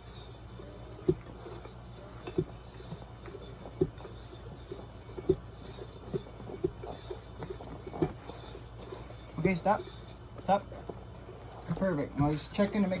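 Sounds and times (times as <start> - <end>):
bike pump knocking: 0.0 - 10.1.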